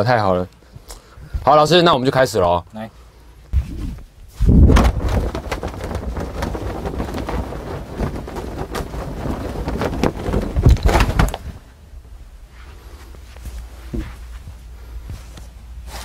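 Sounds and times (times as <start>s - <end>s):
cloth whooshing: 3.6s - 11.7s.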